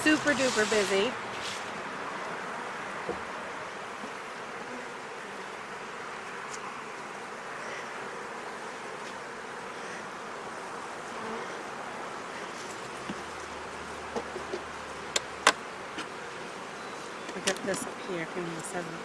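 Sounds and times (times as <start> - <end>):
honeybees buzzing: 0.0 - 19.0.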